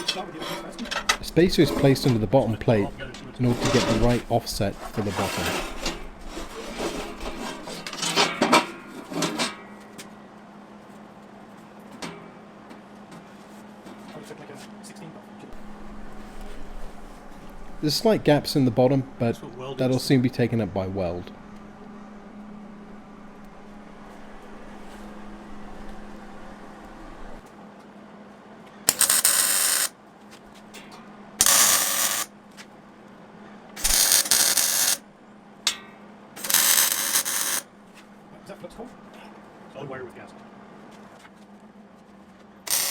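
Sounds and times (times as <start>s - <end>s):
metal stove plates clanking: 0.0s - 2.2s, 4.9s - 9.6s
steady low hum: 0.0s - 13.8s, 14.7s - 39.8s
welding arc bursts: 28.9s - 29.9s, 31.4s - 32.3s, 33.8s - 35.0s, 36.4s - 37.7s, 42.7s - 42.9s.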